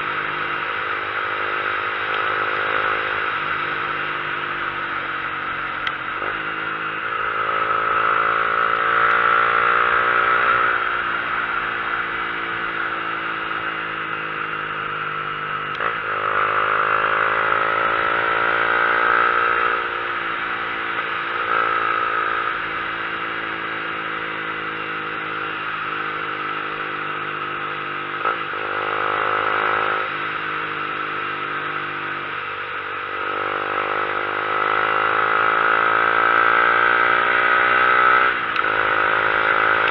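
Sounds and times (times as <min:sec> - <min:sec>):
wind and road noise: 0:00.0 - 0:39.9
vehicle engine shifting gears: 0:37.9 - 0:39.9.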